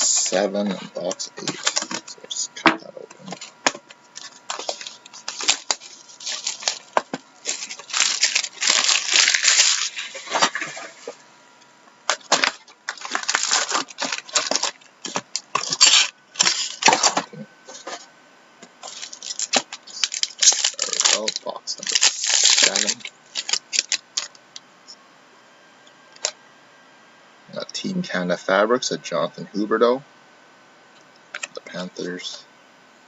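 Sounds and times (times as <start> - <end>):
wrapping tearing and crinkling: 4.1 - 11.1, 12.1 - 17.9, 18.8 - 24.4.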